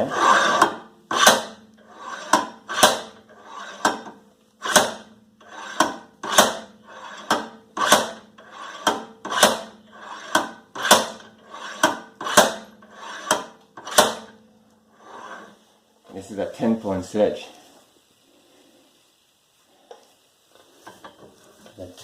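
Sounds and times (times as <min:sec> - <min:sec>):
sledgehammer striking metal hub: 0:00.5 - 0:01.6, 0:02.2 - 0:03.2, 0:03.8 - 0:14.4.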